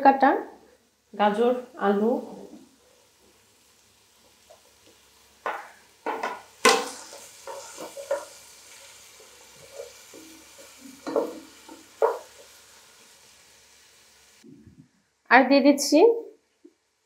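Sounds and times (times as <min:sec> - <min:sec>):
oil sizzling: 0:00.4 - 0:14.5, 0:16.4 - 0:17.0
spatula scraping a frying pan: 0:06.1 - 0:12.6.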